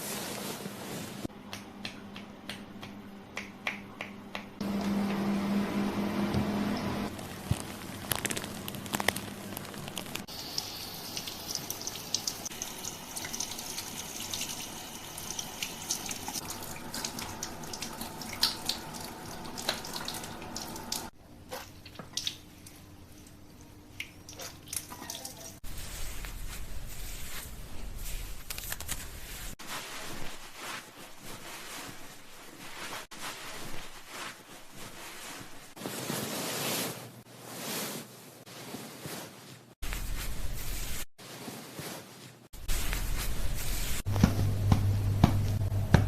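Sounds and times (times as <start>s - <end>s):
water drips: 10.3s - 25.6s.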